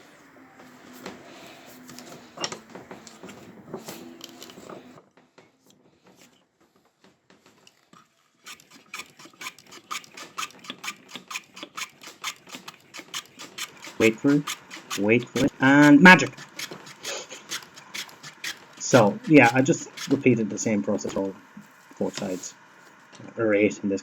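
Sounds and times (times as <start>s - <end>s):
hand plane shaving wood: 0.0s - 5.0s, 8.4s - 23.0s.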